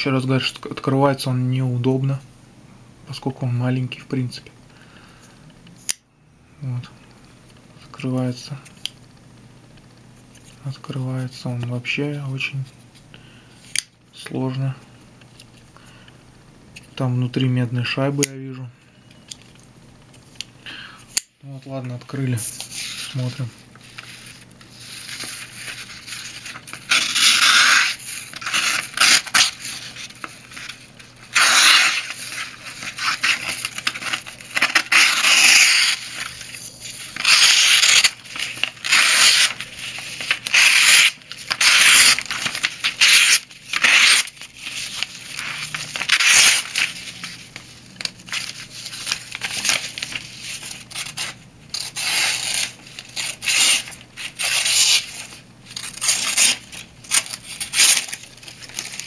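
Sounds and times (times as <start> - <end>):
knife blade cutting material: 31.3 - 32.1, 34.7 - 36.0.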